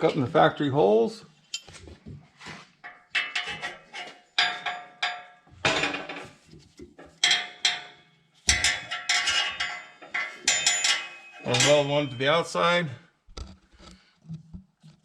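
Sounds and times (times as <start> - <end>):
metal rods clanking: 2.8 - 12.7.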